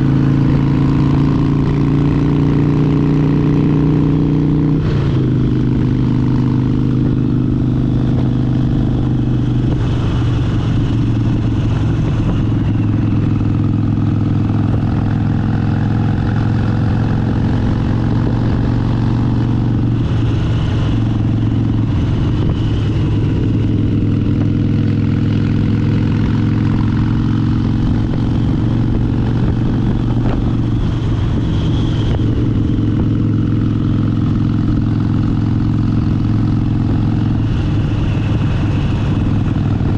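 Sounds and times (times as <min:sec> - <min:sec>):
motorcycle engine cruising: 0:00.0 - 0:39.9
road and wind rush: 0:00.0 - 0:39.9.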